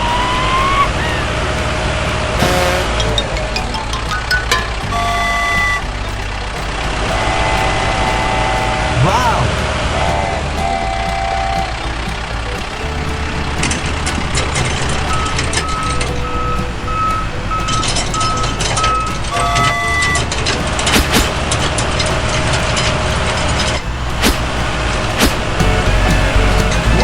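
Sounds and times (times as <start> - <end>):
heavy truck engine running: 0.0 - 27.0
sharp metallic knocks: 0.0 - 27.0
reversing alarm beeping: 14.4 - 20.6.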